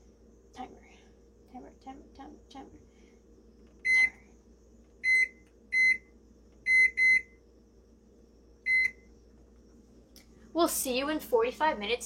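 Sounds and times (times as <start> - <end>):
appliance keypad beeps: 5.0 - 6.0, 6.6 - 7.3, 8.7 - 9.0.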